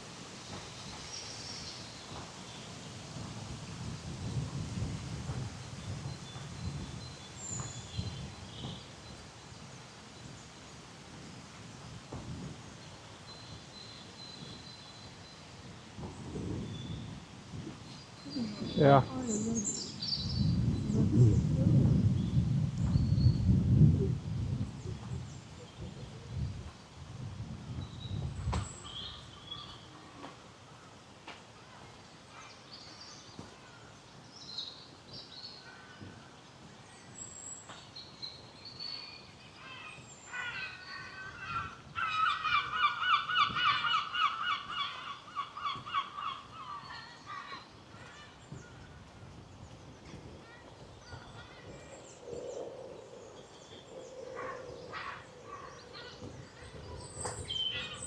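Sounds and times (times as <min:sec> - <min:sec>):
small birds chirping: 0:12.7 - 0:27.0, 0:36.8 - 0:58.0.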